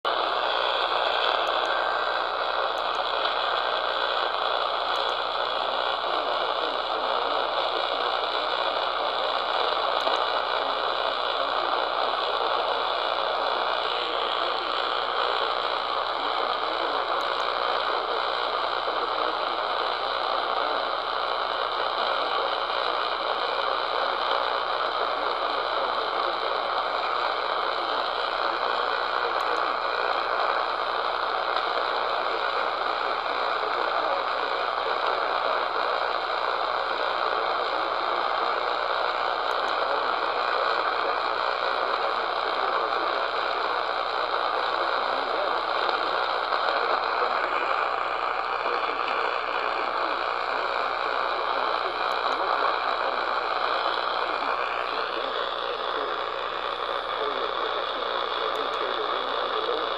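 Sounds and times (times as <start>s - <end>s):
radio static hiss and crackle: 0.0s - 59.9s.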